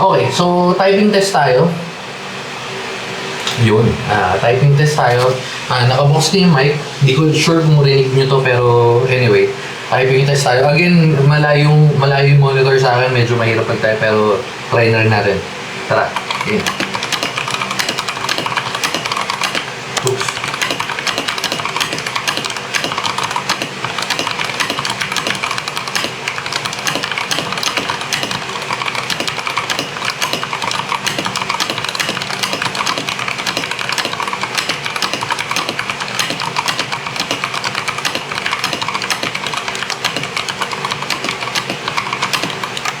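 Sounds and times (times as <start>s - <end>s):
fast mechanical keyboard typing: 16.1s - 43.0s.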